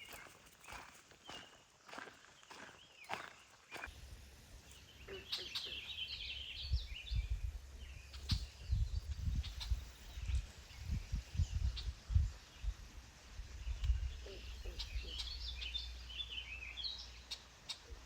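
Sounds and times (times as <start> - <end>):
songbird warbling: 4.7 - 12.0, 13.7 - 18.0
wind buffeting microphone: 6.5 - 15.5.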